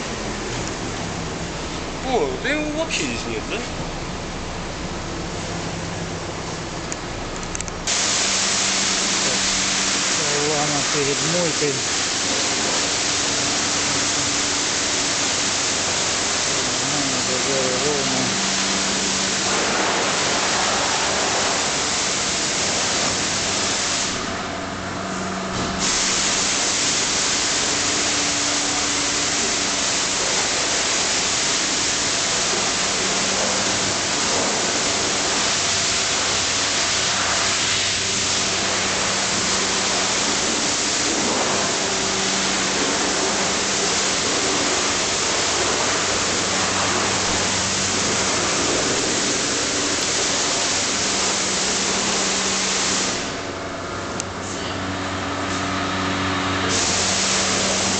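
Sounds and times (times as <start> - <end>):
spray gun hissing: 7.9 - 24.4, 25.0 - 53.4, 56.5 - 57.9.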